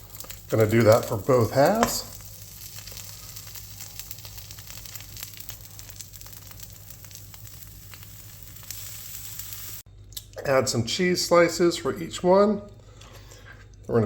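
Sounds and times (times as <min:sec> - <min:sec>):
butter sizzling in a pan: 0:00.0 - 0:09.9
small crackles: 0:00.0 - 0:10.3
low steady hum: 0:00.0 - 0:14.0.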